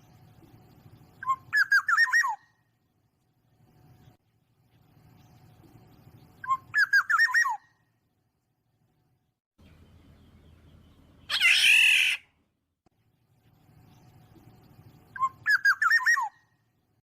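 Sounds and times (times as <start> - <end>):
bird harsh nasal squawk: 11.3 - 12.3.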